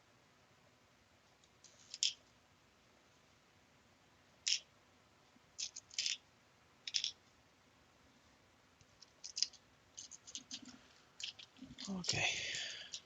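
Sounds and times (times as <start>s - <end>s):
small metal screws rattling: 1.6s - 2.3s, 4.4s - 4.7s, 5.6s - 6.2s, 6.8s - 7.2s, 9.0s - 11.9s.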